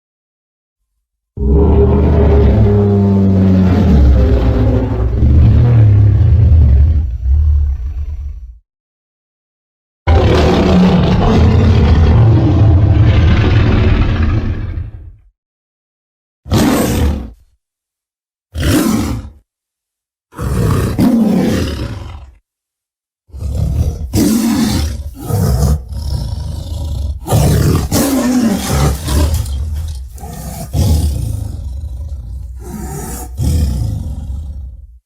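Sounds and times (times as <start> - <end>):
creature roars and growls: 1.4 - 8.4, 10.1 - 15.2, 16.5 - 17.4, 18.6 - 19.4, 20.3 - 22.4, 23.3 - 35.0.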